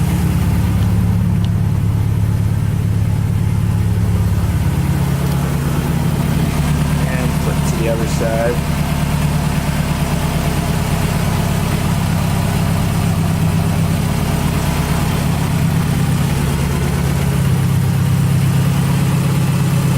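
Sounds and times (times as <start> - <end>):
car engine idling: 0.0 - 19.9.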